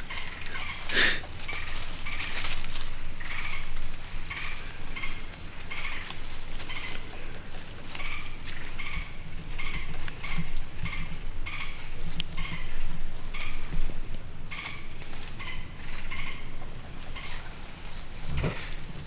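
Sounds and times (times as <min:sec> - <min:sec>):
footsteps crunching dry leaves: 0:00.0 - 0:10.6, 0:14.2 - 0:19.0.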